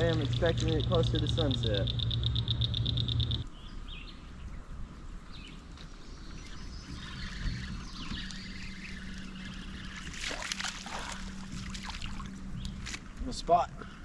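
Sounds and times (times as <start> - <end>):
hum with high-pitched pulsing: 0.0 - 3.5, 4.3 - 13.2
faint bird chirps: 5.3 - 10.4.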